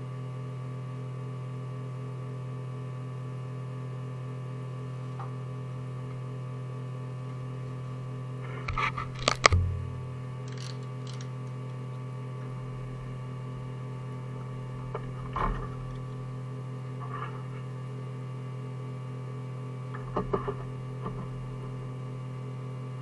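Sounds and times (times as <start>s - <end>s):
three d printer humming: 7.2s - 18.0s
clicks: 8.7s - 12.5s
sharp knock: 9.5s - 10.2s.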